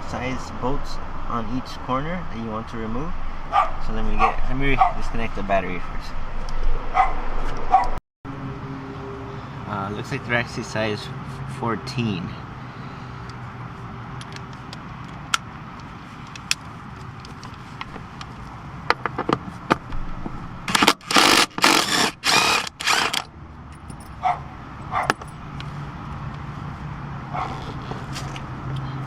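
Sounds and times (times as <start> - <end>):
ratchet wrench rasping: 20.7 - 24.0.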